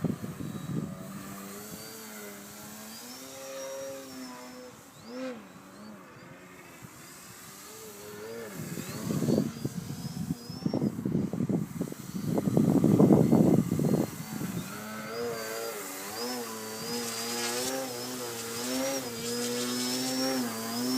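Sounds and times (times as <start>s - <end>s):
wind buffeting on microphone: 0.0s - 2.2s, 8.4s - 20.9s
model airplane motor and propeller: 0.0s - 20.9s.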